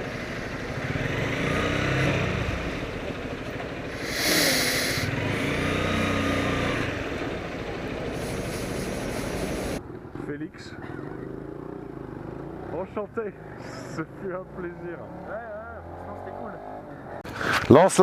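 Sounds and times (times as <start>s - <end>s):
motorcycle engine revving: 0.0s - 17.2s
loud hissing: 3.9s - 5.7s, 8.0s - 9.8s.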